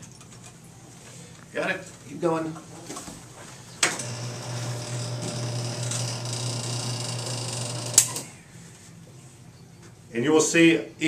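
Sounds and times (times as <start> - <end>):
electric motor humming: 4.0 - 8.3.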